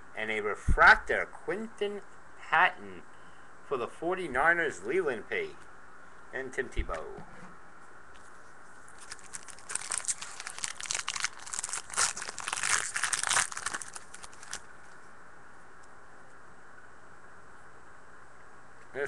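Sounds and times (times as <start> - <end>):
wrapper being torn and crinkled: 8.9 - 14.7.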